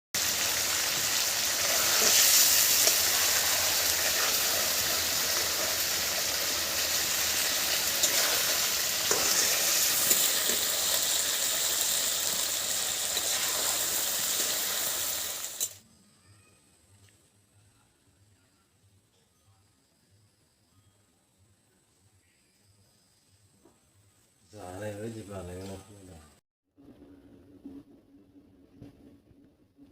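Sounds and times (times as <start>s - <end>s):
food sizzling in hot oil: 0.2s - 15.8s.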